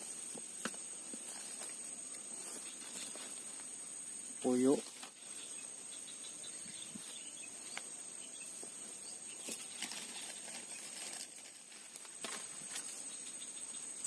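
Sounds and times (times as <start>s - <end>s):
insects chirring: 0.0s - 14.0s.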